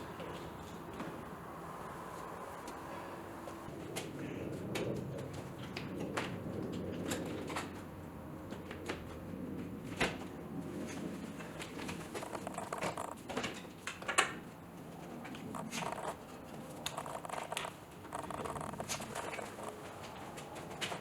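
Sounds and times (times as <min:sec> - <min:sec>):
handling clicks and taps: 0:12.1 - 0:13.2, 0:15.6 - 0:16.2, 0:16.9 - 0:21.0
rubbing and rustling: 0:15.4 - 0:21.0.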